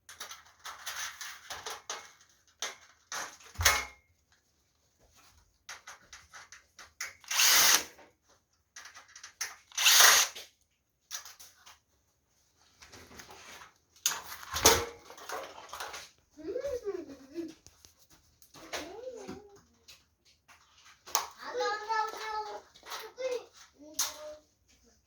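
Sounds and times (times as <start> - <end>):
cordless drill driving screws: 7.2 - 8.0, 9.7 - 10.5.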